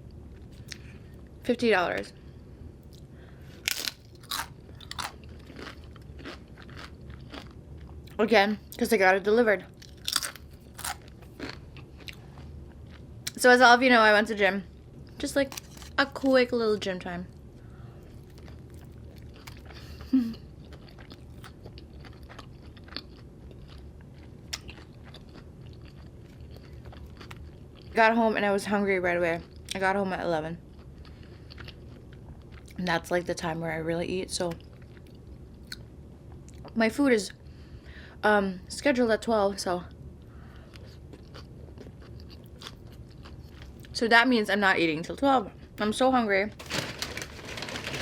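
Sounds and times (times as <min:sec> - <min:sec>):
crunchy chewing of food: 0:02.8 - 0:08.2, 0:09.7 - 0:13.4, 0:14.8 - 0:16.4, 0:17.6 - 0:28.0, 0:30.6 - 0:32.8, 0:34.6 - 0:36.8, 0:40.2 - 0:44.0, 0:46.6 - 0:48.0
crunching bites: 0:03.6 - 0:07.6, 0:09.8 - 0:12.2, 0:15.5 - 0:16.0
soft chewing clicks: 0:04.2 - 0:08.2, 0:20.6 - 0:27.9, 0:40.6 - 0:44.0.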